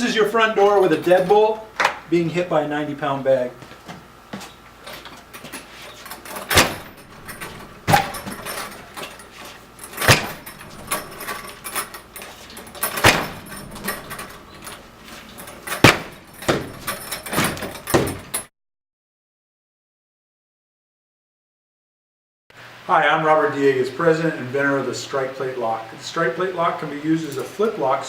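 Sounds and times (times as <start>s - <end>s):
door rattling in frame: 6.1s - 18.5s
heavy bangs on door: 6.5s - 9.2s, 9.8s - 18.5s
small knocks: 6.5s - 18.5s.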